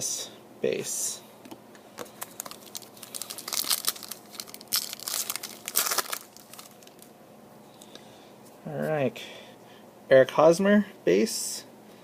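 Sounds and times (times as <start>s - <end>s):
wrapper tearing and crinkling: 2.0s - 7.1s.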